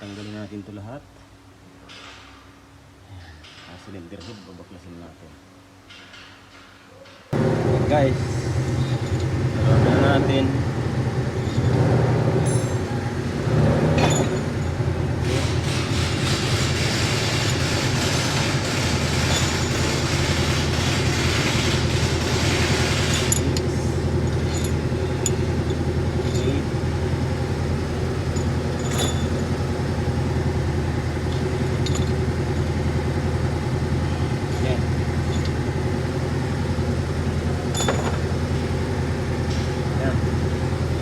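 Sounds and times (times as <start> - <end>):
motor humming: 7.4 - 39.6
hand tools clinking: 8.7 - 9.4, 11.3 - 30.2, 31.2 - 32.8, 35.2 - 35.7, 37.6 - 38.6.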